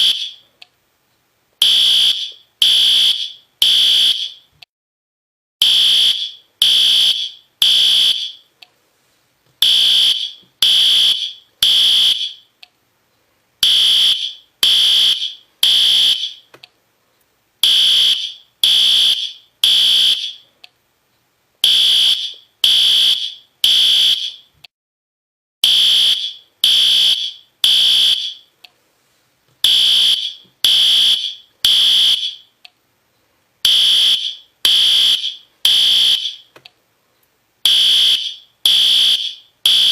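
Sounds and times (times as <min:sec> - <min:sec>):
fire alarm horn beeping: 0:00.0 - 0:00.4, 0:01.6 - 0:04.5, 0:05.6 - 0:08.5, 0:09.6 - 0:12.5, 0:13.6 - 0:16.5, 0:17.6 - 0:20.4, 0:21.6 - 0:24.5, 0:25.6 - 0:28.5, 0:29.6 - 0:32.5, 0:33.7 - 0:36.5, 0:37.7 - 0:39.9.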